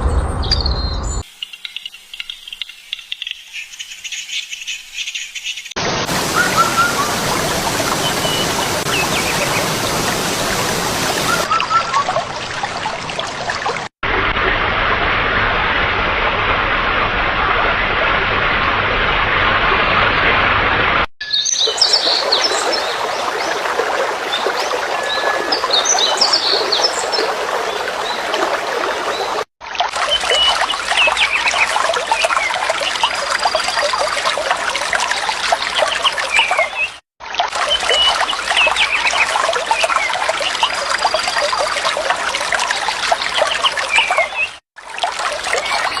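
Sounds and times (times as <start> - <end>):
birds chirping: 0.0 - 12.2, 21.2 - 29.4, 30.1 - 34.1
running water: 5.8 - 20.4, 21.5 - 46.0.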